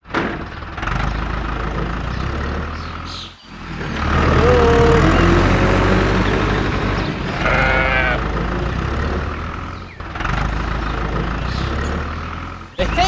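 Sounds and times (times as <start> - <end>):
motor humming: 4.3 - 11.5.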